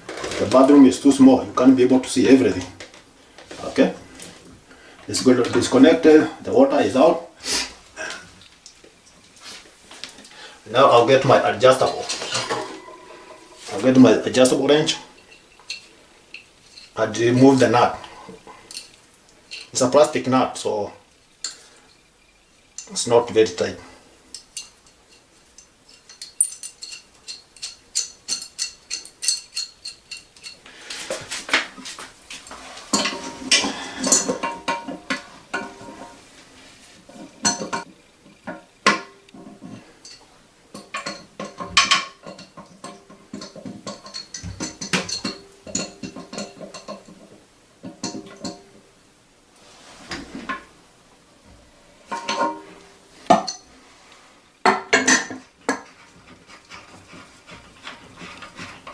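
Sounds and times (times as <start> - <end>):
wrench clinking on fittings: 11.0 - 19.8, 24.3 - 36.2, 37.2 - 48.8, 52.1 - 53.7.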